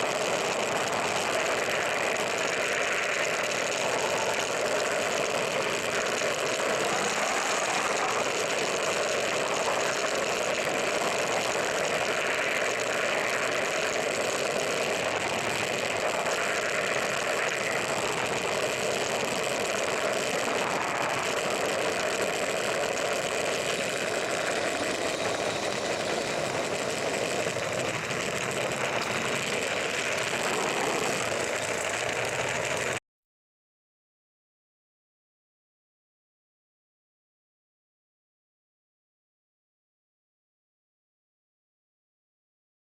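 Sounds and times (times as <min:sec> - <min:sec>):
model steam locomotive clattering: 0:00.0 - 0:33.0.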